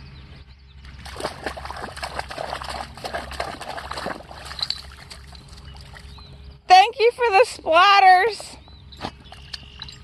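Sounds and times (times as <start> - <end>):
dog splashing water and mud: 0.9 - 6.2.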